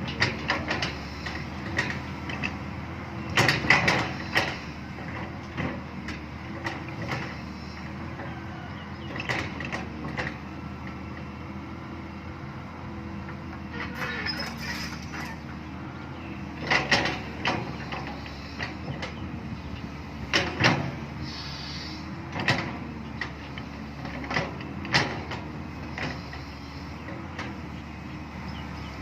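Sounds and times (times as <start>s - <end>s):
diesel engine running: 0.0s - 29.0s
excavator bucket clanking: 3.2s - 7.4s, 16.6s - 19.3s, 20.2s - 21.1s, 22.3s - 26.4s.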